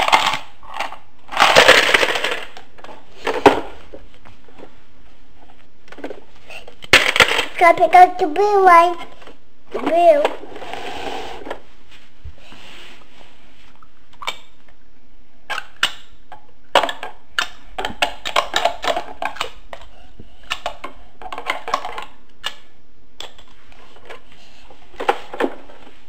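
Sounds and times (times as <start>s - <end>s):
plastic toy clicks and rattles: 0.0s - 2.7s, 16.7s - 23.5s.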